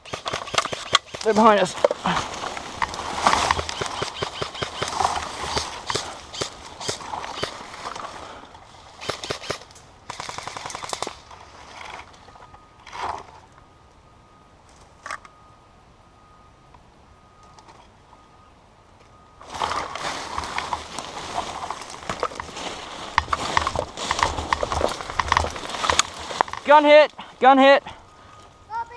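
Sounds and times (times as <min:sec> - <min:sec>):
airsoft guns firing: 0:00.0 - 0:01.6, 0:03.2 - 0:07.6, 0:09.0 - 0:11.2
noisy movement: 0:00.0 - 0:13.6, 0:19.4 - 0:28.7.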